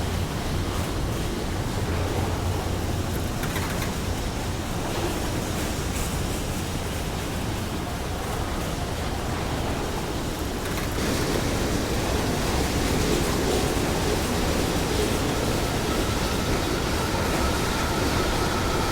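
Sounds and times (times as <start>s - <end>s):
train wheels rumbling on rail: 0.0s - 18.9s.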